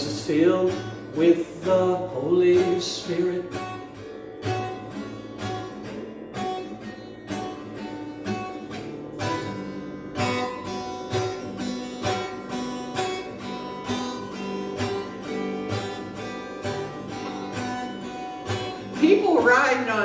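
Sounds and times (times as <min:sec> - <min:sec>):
strummed guitar: 0:00.0 - 0:20.0.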